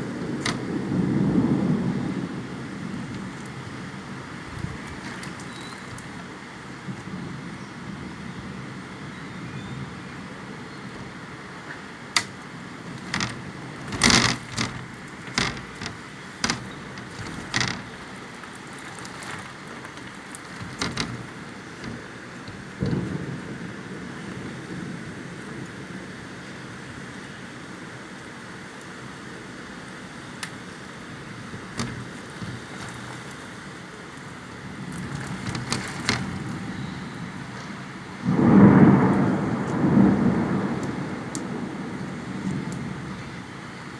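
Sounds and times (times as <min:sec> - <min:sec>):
wind noise: 0:00.0 - 0:11.6, 0:12.2 - 0:25.2
steady rain: 0:00.0 - 0:43.9
sharp knocks and cracks: 0:00.1 - 0:00.8, 0:04.4 - 0:06.3, 0:12.1 - 0:23.4, 0:31.5 - 0:36.6.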